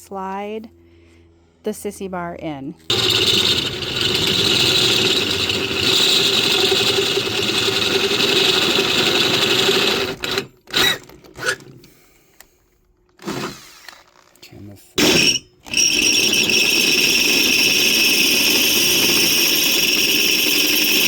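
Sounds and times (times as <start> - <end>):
electric power tool whining: 2.9 - 11.7, 15.0 - 21.0.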